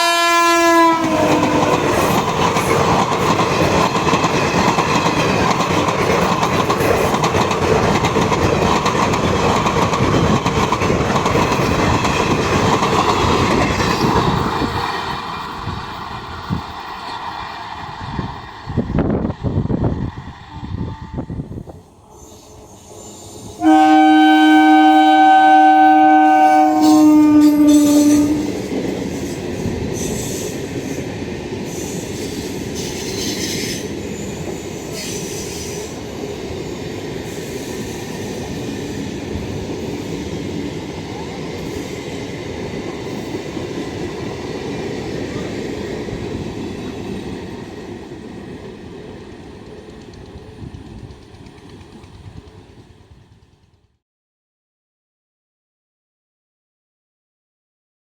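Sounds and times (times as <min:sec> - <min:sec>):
train horn blast: 0:00.0 - 0:01.8, 0:20.5 - 0:28.6
train rumbling and clattering: 0:00.0 - 0:54.0.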